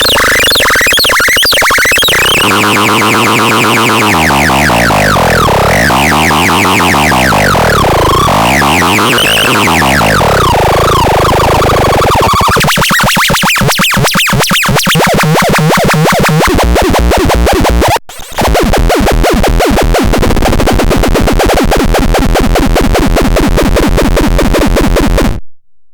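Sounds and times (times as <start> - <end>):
fast repeating synthesizer notes: 0.0 - 25.4
pulsing low bass: 2.1 - 12.1.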